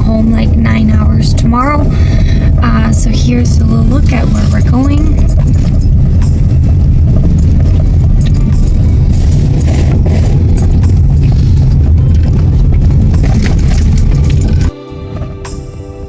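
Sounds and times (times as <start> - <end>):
loose items rattling in cabin: 0.0 - 15.3
car tyres and engine rumbling: 0.0 - 16.0.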